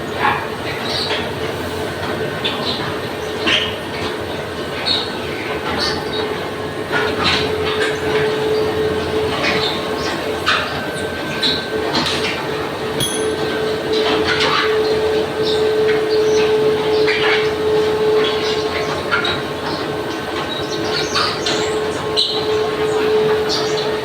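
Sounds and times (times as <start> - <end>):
steady machine whine: 4.4 - 24.0
heavy machinery running: 5.4 - 24.0.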